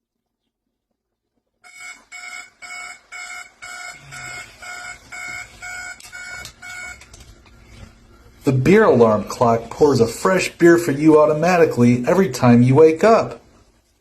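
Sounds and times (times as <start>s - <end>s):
alarm clock beeping: 1.6s - 7.1s.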